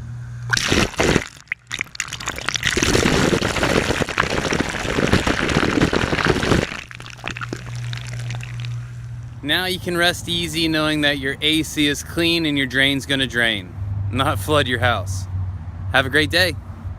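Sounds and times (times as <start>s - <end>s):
water gushing from a drain line: 0.5s - 8.9s.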